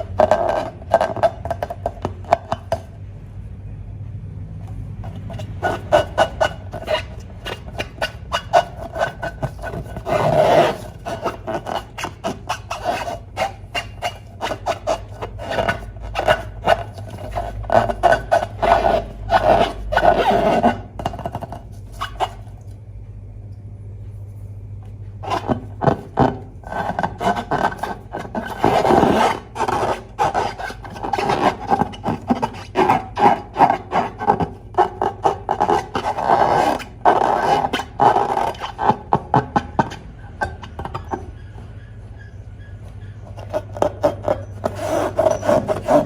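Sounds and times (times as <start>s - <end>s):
hands rubbing rubber balloons: 0.0s - 3.0s, 4.7s - 22.6s, 25.2s - 41.4s, 43.2s - 46.0s.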